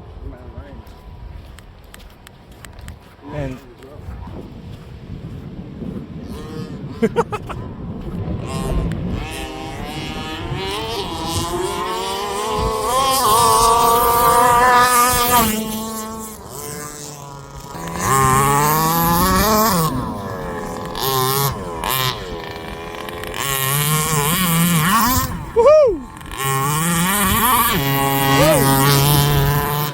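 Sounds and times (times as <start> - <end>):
small two-stroke engines revving: 6.2 - 29.9
car speeding past: 8.2 - 25.6.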